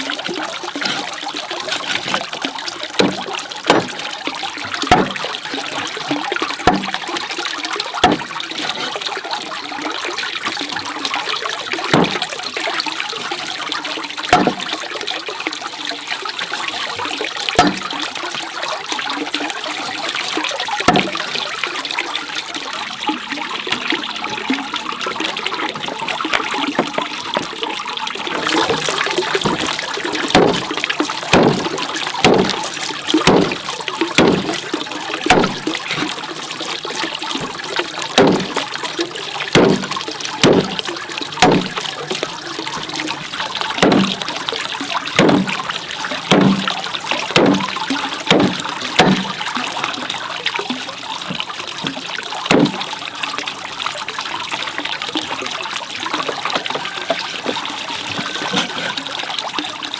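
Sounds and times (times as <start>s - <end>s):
water trickling: 0.0s - 59.9s
sharp knocks: 3.0s - 4.0s, 4.9s - 5.2s, 6.7s - 7.0s, 8.0s - 8.3s, 11.9s - 12.2s, 14.3s - 14.6s, 17.6s - 17.9s, 20.9s - 21.1s, 28.4s - 30.7s, 31.3s - 33.6s, 34.2s - 34.6s, 35.3s - 35.6s, 38.2s - 38.6s, 39.5s - 40.8s, 41.4s - 41.8s, 43.8s - 44.2s, 45.2s - 45.6s, 46.3s - 46.8s, 47.4s - 49.3s, 52.5s - 52.8s.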